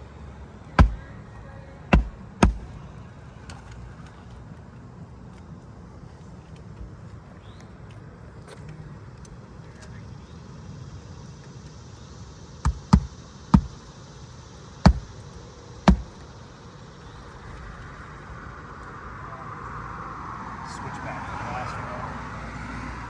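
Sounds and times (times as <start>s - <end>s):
hammer blows on shingle roof: 0.7s - 2.9s, 12.6s - 13.9s, 14.8s - 15.2s, 15.8s - 16.2s.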